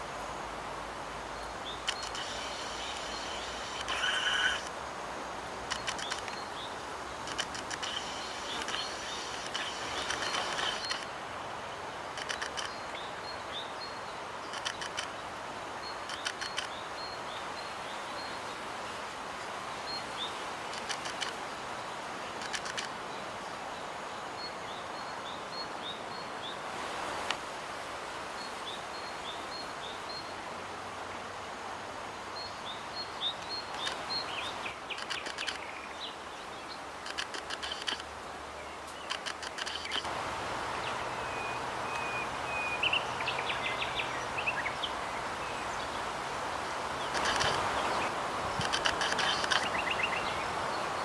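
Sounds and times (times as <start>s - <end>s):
outdoor background hiss: 0.0s - 51.0s
small birds chirping: 32.4s - 40.1s, 47.0s - 51.0s.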